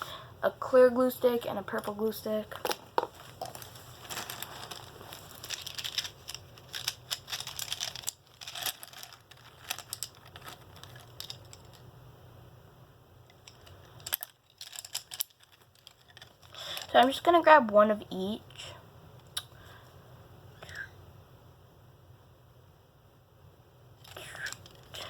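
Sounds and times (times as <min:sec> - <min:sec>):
rustling in a pencil pouch: 0:03.0 - 0:11.8, 0:13.4 - 0:17.2, 0:24.0 - 0:25.0.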